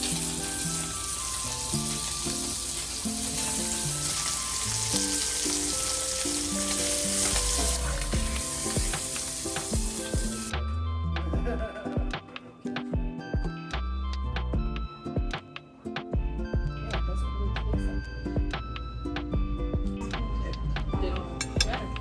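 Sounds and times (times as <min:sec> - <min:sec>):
fish sizzling in a pan: 0:00.0 - 0:10.5
background music: 0:00.0 - 0:22.0.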